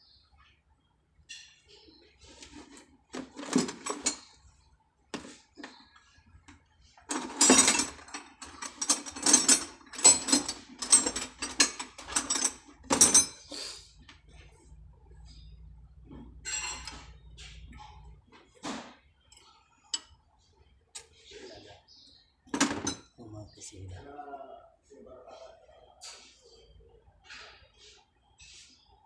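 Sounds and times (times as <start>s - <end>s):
metal tool clicks and rattles: 7.1s - 13.4s.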